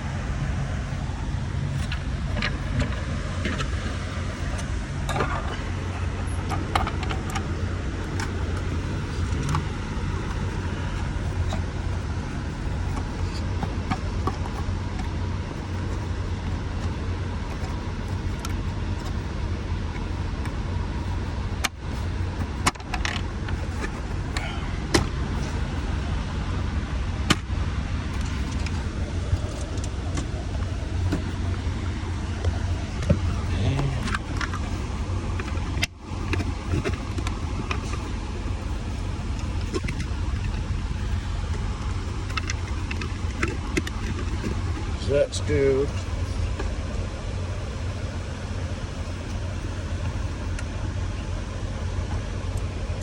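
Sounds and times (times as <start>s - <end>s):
low engine rumble: 0.0s - 53.0s
small clicks and taps of parts: 42.2s - 44.6s.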